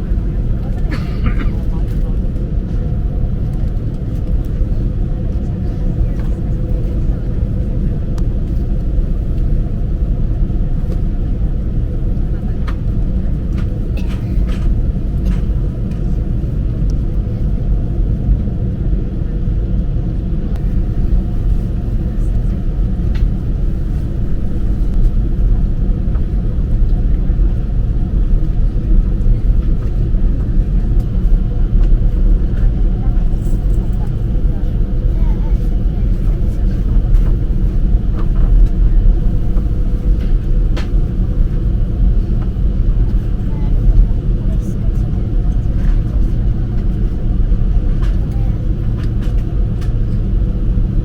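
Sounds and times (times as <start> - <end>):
aircraft cabin engine rumble: 0.0 - 51.0.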